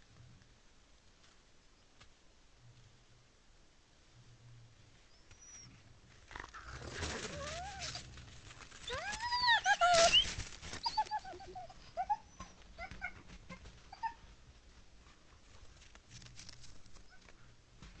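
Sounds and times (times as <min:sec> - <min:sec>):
coyotes yipping: 0:05.1 - 0:14.4, 0:16.9 - 0:17.5
coyote howling: 0:06.8 - 0:08.2, 0:08.8 - 0:13.2.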